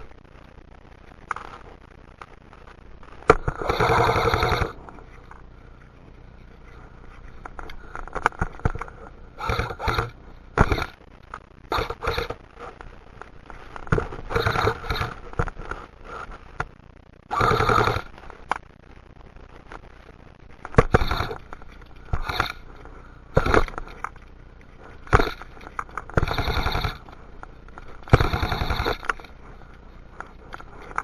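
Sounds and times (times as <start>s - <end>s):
airsoft guns firing rapid bursts: 3.4s - 4.8s, 9.4s - 11.0s, 11.7s - 12.4s, 14.3s - 15.2s, 17.3s - 18.1s, 20.9s - 21.4s, 22.1s - 22.6s, 26.2s - 27.1s, 28.0s - 29.1s.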